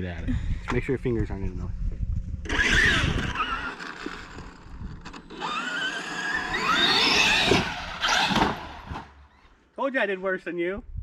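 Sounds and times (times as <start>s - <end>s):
electric motor whine rising: 2.4s - 9.5s.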